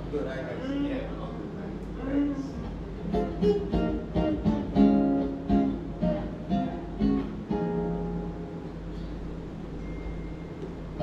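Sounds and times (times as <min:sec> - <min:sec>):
acoustic guitar strumming: 0:03.0 - 0:09.2.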